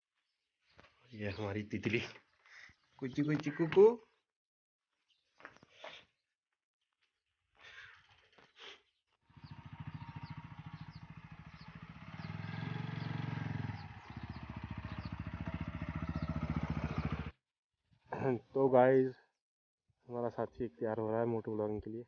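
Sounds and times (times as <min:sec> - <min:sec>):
motorcycle engine idling: 0:09.2 - 0:17.4.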